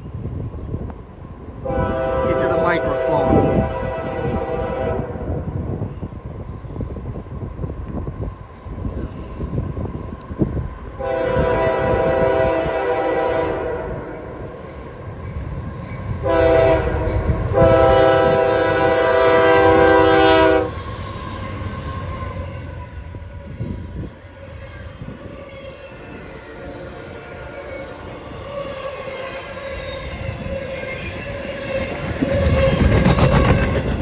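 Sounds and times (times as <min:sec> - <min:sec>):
wind buffeting microphone: 0:00.0 - 0:34.0
locomotive air horn blasts: 0:01.6 - 0:05.4, 0:11.0 - 0:14.1, 0:16.2 - 0:21.0.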